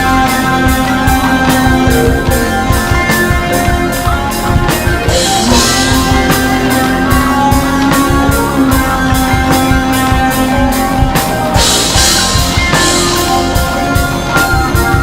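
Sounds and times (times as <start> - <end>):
instrumental rock music: 0.0 - 15.0.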